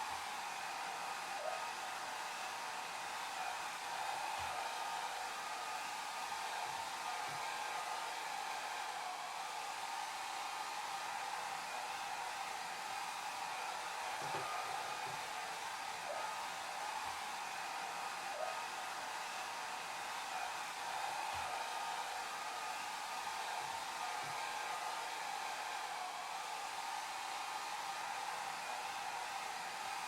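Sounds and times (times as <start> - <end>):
hair dryer blowing: 0.0 - 30.0.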